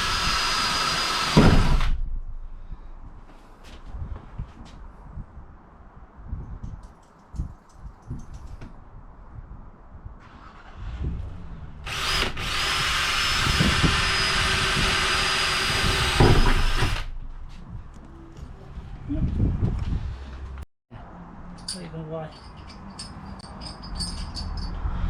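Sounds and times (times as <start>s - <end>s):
power drill running: 0.0s - 1.9s, 11.9s - 17.1s.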